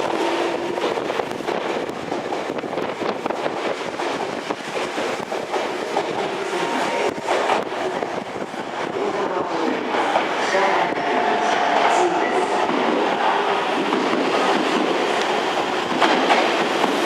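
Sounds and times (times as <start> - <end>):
train wheels clattering over rail joints: 0.0 - 8.8, 12.7 - 17.0.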